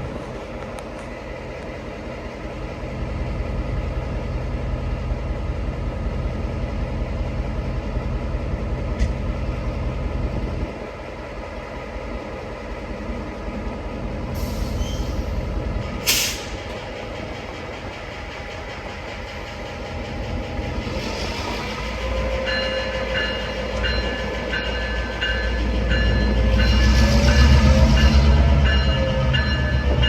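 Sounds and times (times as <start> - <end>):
diesel locomotive rumbling: 0.0 - 30.0
air hiss: 16.0 - 16.7
locomotive bell ringing: 22.1 - 30.0.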